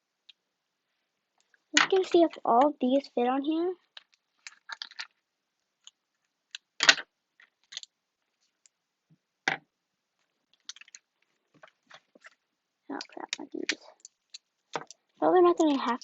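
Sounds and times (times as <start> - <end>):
craft pieces and tape rustling: 1.3 - 3.1, 3.7 - 8.8, 10.2 - 16.0.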